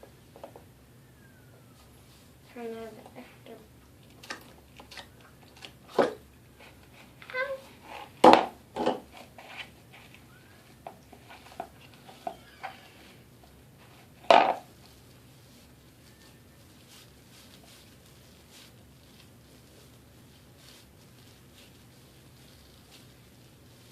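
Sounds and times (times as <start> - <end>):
slime squelching by hand: 14.1 - 23.9.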